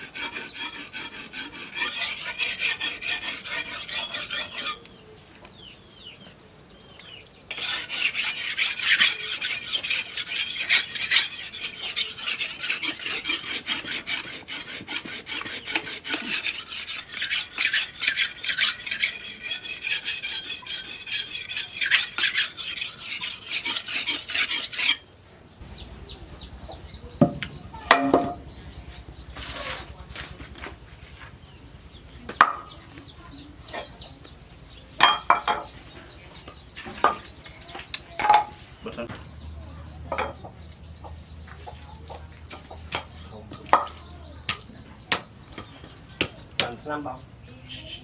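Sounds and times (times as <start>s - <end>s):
rasping abrasive strokes on steel: 0.0s - 4.9s, 7.5s - 25.0s
sharp knocks: 26.7s - 28.6s.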